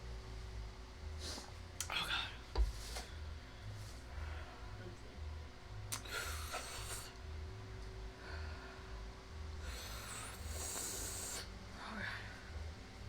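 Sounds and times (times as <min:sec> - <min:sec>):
person breathing sharply through mouth: 0:05.9 - 0:07.2, 0:09.6 - 0:11.5.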